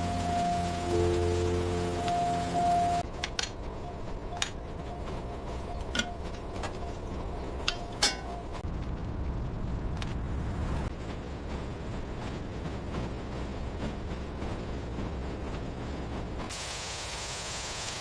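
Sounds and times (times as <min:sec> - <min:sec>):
chime-like tone: 0:00.0 - 0:03.0
steady low rumble: 0:00.0 - 0:16.6.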